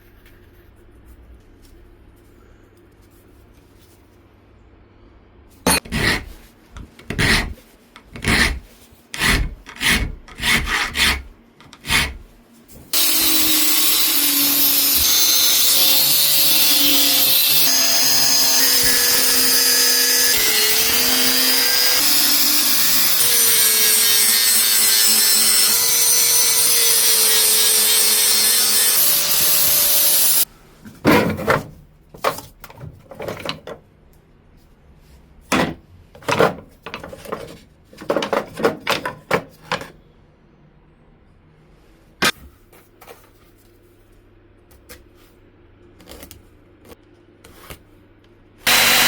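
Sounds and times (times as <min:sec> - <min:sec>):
power tool running: 0:12.9 - 0:30.4, 0:48.6 - 0:49.0.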